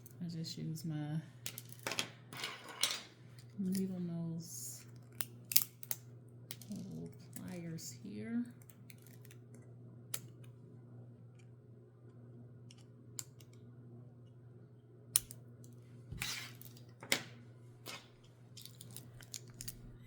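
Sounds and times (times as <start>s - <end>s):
steady low hum: 0.0s - 20.0s
plastic pieces clicking and snapping: 4.9s - 7.6s, 8.6s - 10.4s, 15.2s - 15.4s, 16.7s - 19.9s.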